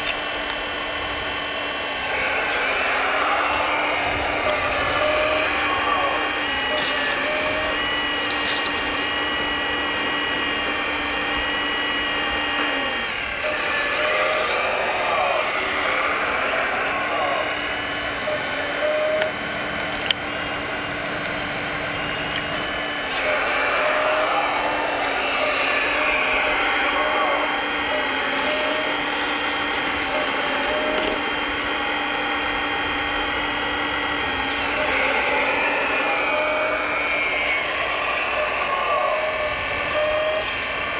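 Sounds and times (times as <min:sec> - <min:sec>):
electric motors whining: 0:00.0 - 0:40.9.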